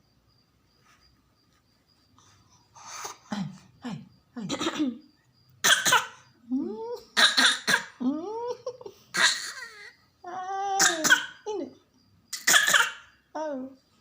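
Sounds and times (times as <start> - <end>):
girl coughing: 4.4 - 5.0, 5.6 - 6.2, 7.2 - 8.0, 10.8 - 11.4, 12.4 - 13.1.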